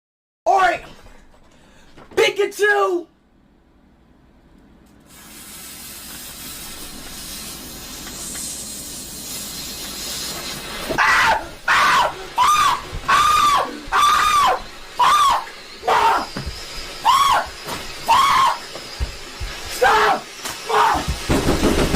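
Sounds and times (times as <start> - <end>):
firework hissing: 5.1 - 21.9
short pitched cries: 11.0 - 16.4, 17.0 - 18.7, 19.8 - 21.1.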